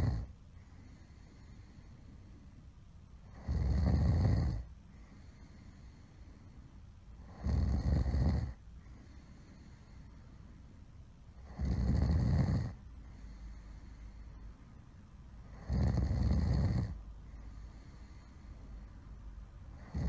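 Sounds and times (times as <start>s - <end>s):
loud rasping snores: 0.0s - 0.3s, 3.3s - 5.4s, 7.2s - 8.6s, 11.4s - 12.8s, 15.5s - 17.0s, 19.8s - 20.0s
quiet breathing: 0.0s - 20.0s.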